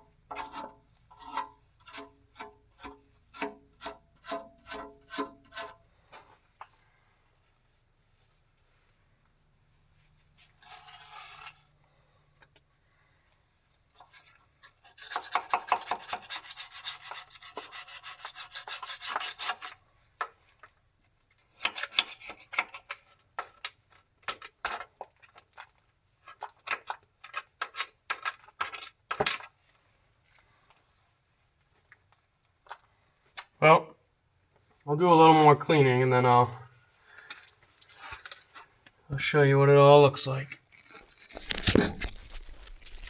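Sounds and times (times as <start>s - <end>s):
hand scrubbing grime: 14.9s - 19.8s.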